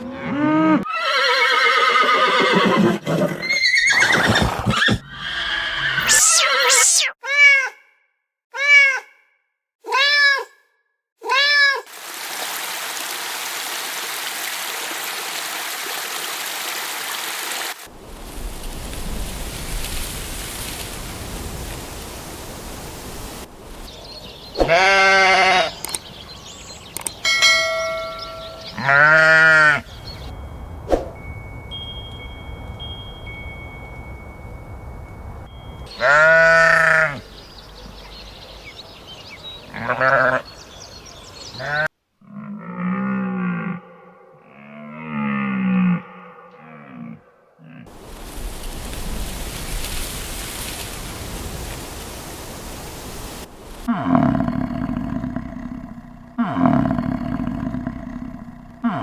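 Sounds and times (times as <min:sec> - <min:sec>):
animal calls: 0:04.0 - 0:07.2
whistle-like tone: 0:06.0 - 0:07.2.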